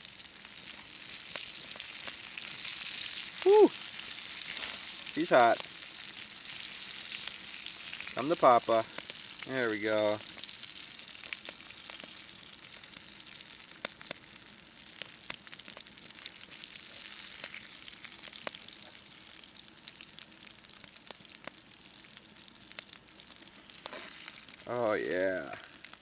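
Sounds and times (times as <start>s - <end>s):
oil sizzling in a frying pan: 0.0s - 26.0s
sharp pops and crackles: 8.0s - 12.2s.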